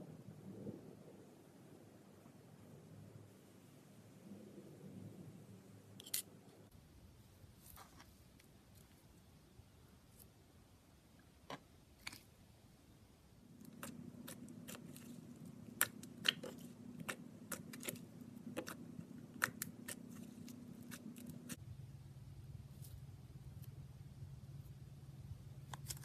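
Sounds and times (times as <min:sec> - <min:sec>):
steady low hum: 0:12.4 - 0:26.0.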